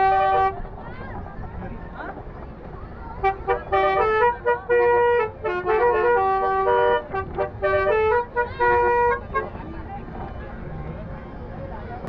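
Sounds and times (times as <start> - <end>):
musical air horn playing tune: 3.2 - 9.5.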